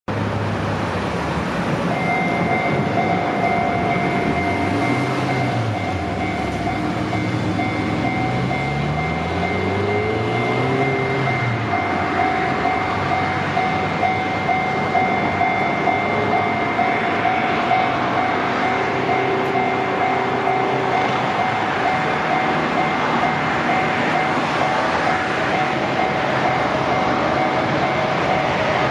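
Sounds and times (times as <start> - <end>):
train rushing on the line: 0.1 - 28.9
level crossing warning bell: 1.8 - 28.9.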